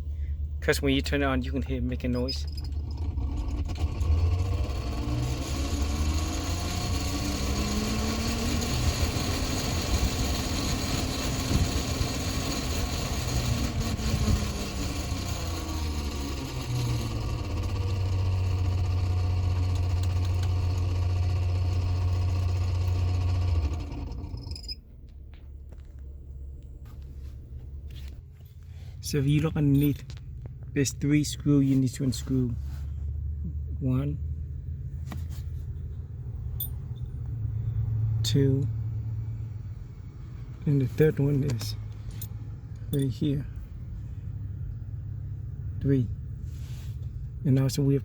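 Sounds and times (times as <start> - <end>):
blower fan motor whining: 2.8 - 24.5.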